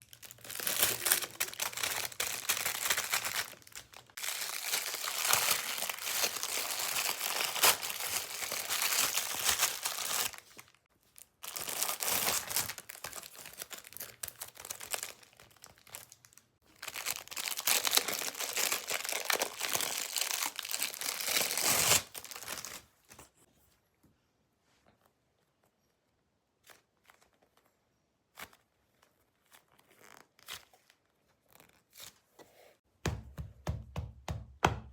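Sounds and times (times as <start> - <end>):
packaging crinkling and tearing: 0.0 - 23.2.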